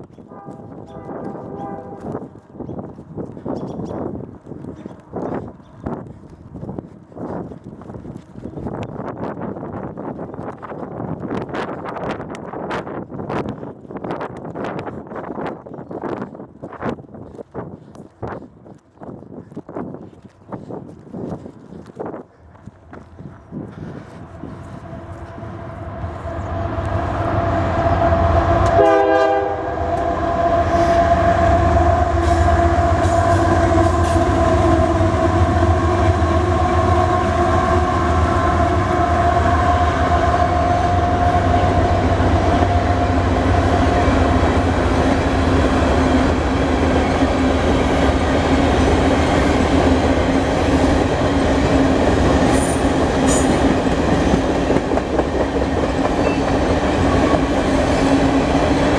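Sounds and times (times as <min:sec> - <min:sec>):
train air horn chord: 0:00.2 - 0:02.2, 0:24.2 - 0:44.3
diesel locomotives rumbling: 0:22.3 - 0:58.9.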